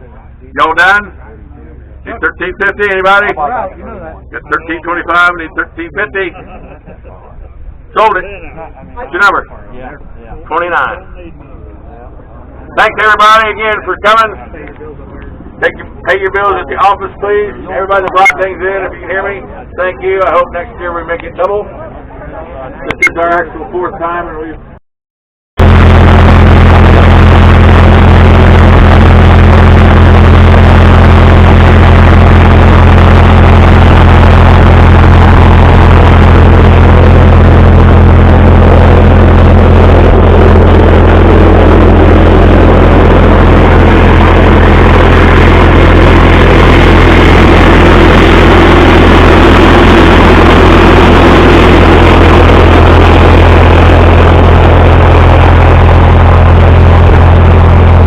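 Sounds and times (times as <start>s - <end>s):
engine idling: 25.6s - 58.0s.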